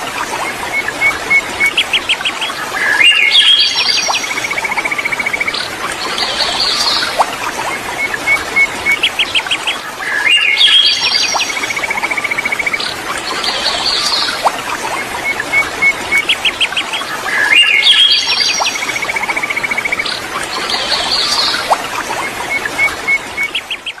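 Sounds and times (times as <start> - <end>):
flowing river water: 0.0 - 24.0
songbirds chirping and trilling: 16.1 - 24.0.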